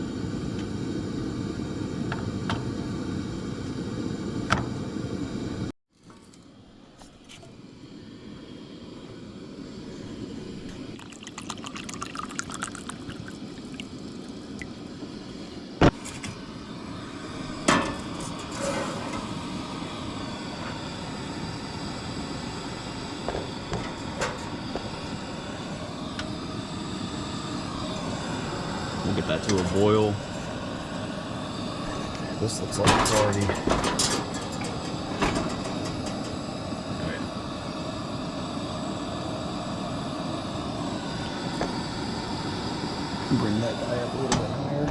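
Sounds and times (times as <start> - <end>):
water pouring into pot: 10.9 - 14.6.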